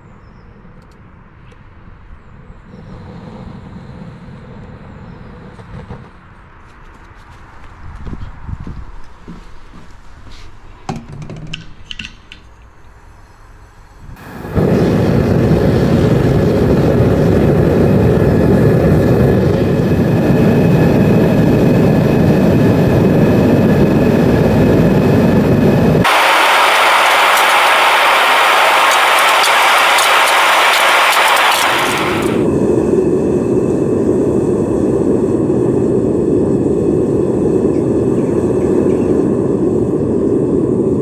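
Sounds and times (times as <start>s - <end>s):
furnace burner roaring: 14.0s - 41.0s.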